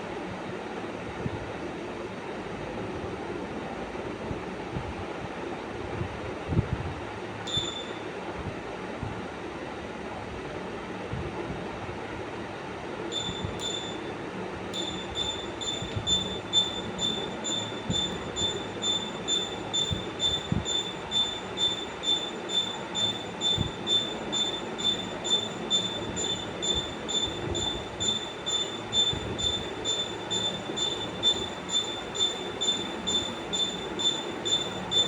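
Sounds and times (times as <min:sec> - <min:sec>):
pulsing high-pitched squeal: 0:14.8 - 0:35.0
steady rumble: 0:14.8 - 0:35.0.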